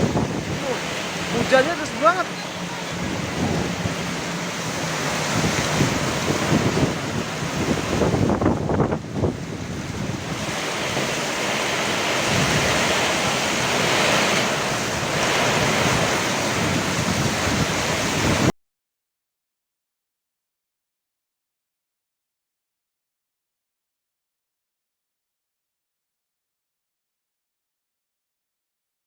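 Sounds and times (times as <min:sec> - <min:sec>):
heavy rain pouring: 0:00.0 - 0:18.5
wind buffeting microphone: 0:00.0 - 0:18.5.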